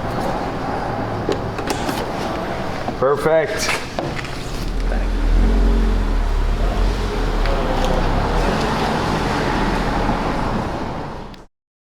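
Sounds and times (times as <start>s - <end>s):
road noise: 0.0s - 3.0s, 3.6s - 11.5s
car engine rumble: 4.5s - 11.4s.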